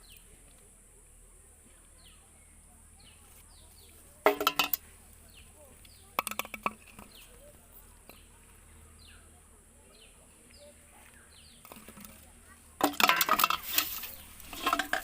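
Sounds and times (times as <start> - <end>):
clinking rattling knocks: 4.2 - 4.8, 6.1 - 7.2, 12.8 - 15.0.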